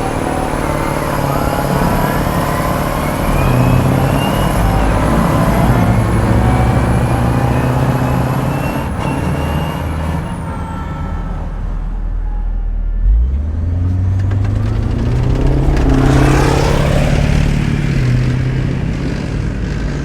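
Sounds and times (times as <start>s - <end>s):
deep diesel engine: 0.0s - 20.0s
high drivetrain whine: 0.0s - 20.0s.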